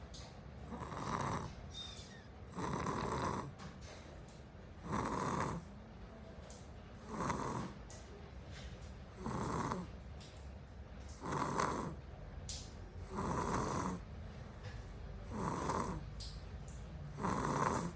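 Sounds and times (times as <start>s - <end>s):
child snoring: 0.7s - 1.6s, 2.5s - 3.5s, 4.8s - 5.6s, 7.0s - 7.8s, 9.2s - 9.9s, 11.2s - 12.0s, 13.1s - 14.0s, 15.3s - 16.0s, 17.2s - 17.9s.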